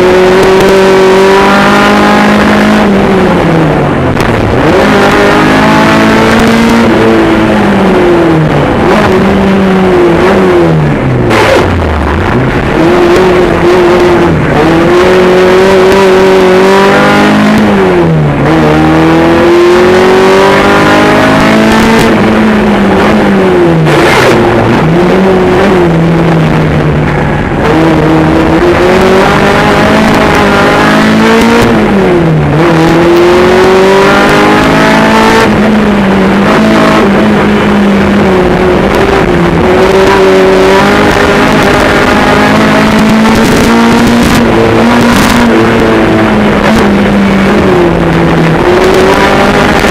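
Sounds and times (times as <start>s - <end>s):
car engine revving hard: 0.0s - 49.9s.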